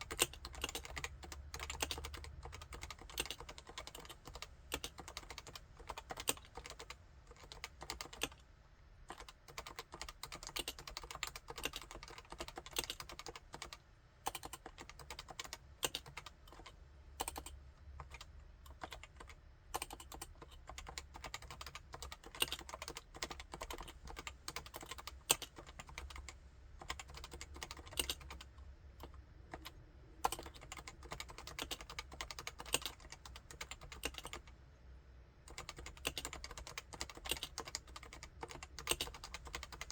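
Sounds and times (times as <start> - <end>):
keyboard typing: 0.0 - 8.4, 9.1 - 34.5, 35.5 - 39.9.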